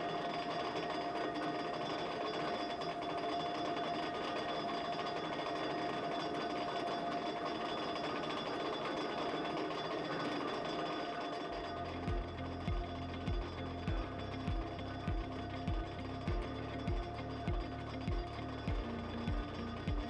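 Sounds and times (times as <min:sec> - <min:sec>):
steady mechanical whine: 0:00.0 - 0:20.0.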